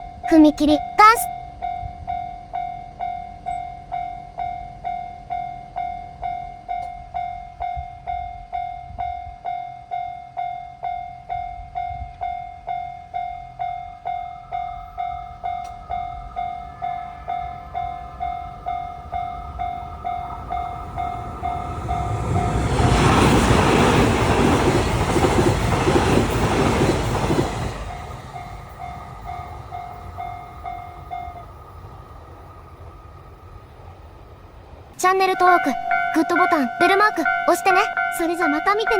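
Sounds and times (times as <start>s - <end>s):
electric train passing: 1.4s - 38.9s
level crossing bell ringing: 35.3s - 38.9s.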